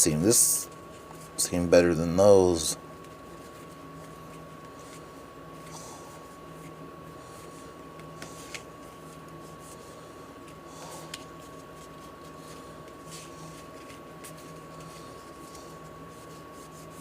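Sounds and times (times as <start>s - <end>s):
faint electrical whine: 0.0s - 17.0s
cards sliding and flipping: 7.4s - 9.8s, 10.4s - 17.0s.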